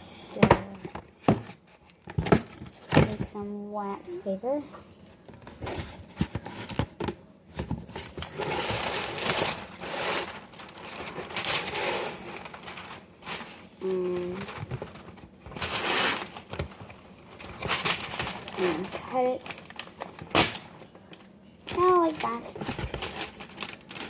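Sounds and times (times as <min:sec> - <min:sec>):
wax paper crinkling: 0:07.9 - 0:24.0.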